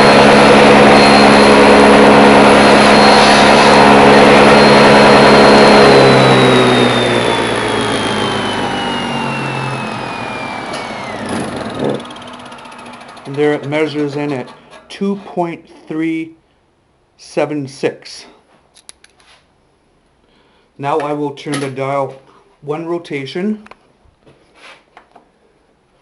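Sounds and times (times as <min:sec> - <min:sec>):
saw blade spinning down: 0:00.0 - 0:15.3
table saw whine: 0:00.0 - 0:15.4.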